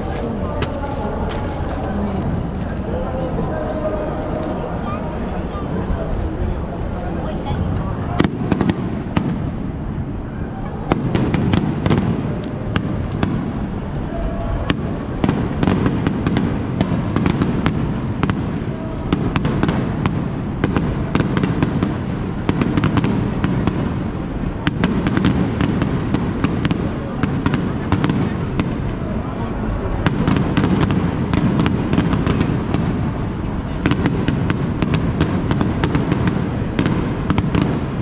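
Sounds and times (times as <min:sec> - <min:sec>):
fireworks cracking and popping: 0:00.0 - 0:02.9, 0:10.8 - 0:29.0, 0:30.0 - 0:38.0
low rumble of explosions: 0:00.0 - 0:38.0.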